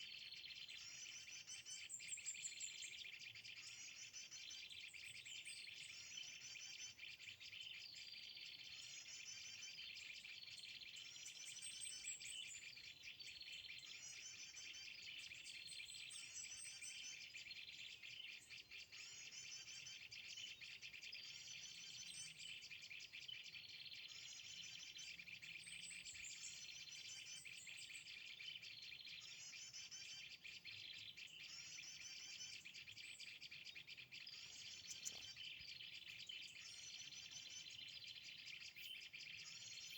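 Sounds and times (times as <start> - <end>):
small bird twittering song: 0.0 - 39.9
insect hum: 31.4 - 39.9.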